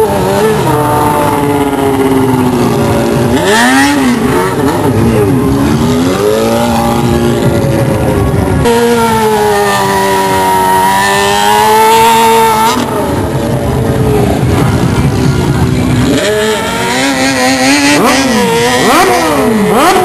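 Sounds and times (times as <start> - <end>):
engine revving: 0.0 - 20.0
rough noise: 0.0 - 20.0.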